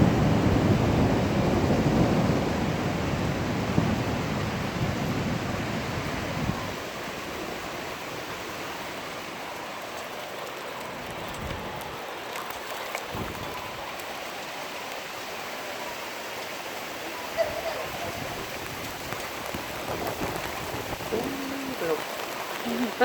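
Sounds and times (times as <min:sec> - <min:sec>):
thunder rumble: 0:00.0 - 0:08.3, 0:13.1 - 0:14.1, 0:17.3 - 0:23.0
rain and hail falling: 0:00.0 - 0:23.0.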